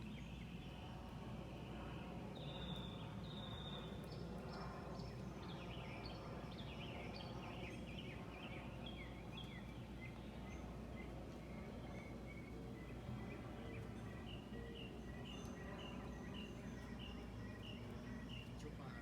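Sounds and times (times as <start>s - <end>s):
birds whistling and chirping: 2.4s - 4.7s, 5.6s - 19.0s.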